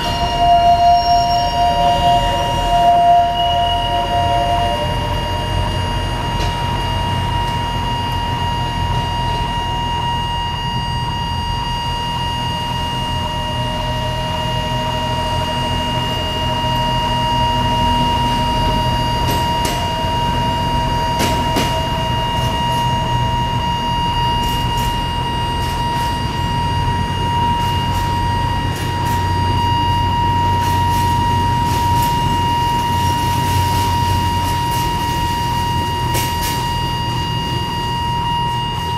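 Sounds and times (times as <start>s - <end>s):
diesel locomotive rumble: 0.0s - 38.9s
level-crossing alarm tone: 0.0s - 38.9s
train wheels clicking on rails: 5.7s - 7.7s, 17.6s - 23.4s, 24.2s - 37.8s.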